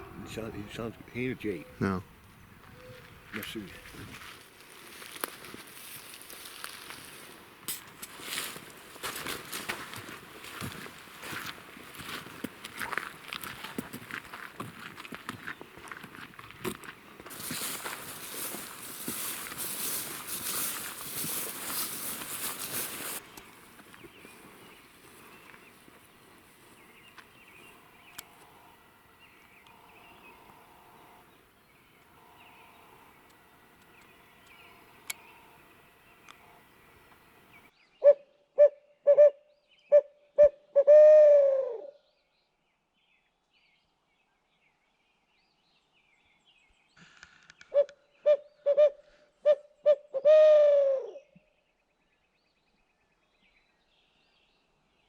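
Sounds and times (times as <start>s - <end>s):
owl hooting: 36.3s - 42.0s, 47.7s - 51.3s.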